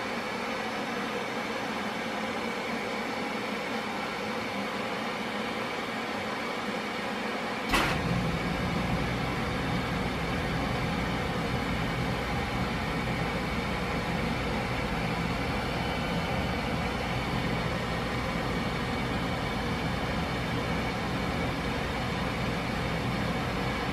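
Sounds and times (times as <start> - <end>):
ceiling fan whirring: 0.0 - 23.9.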